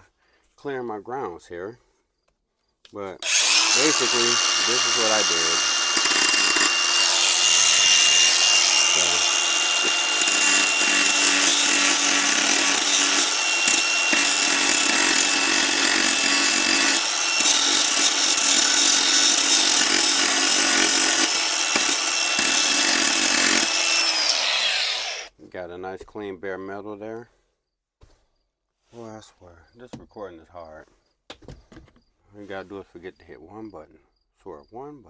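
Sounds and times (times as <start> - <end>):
grinder on metal: 3.2 - 25.3.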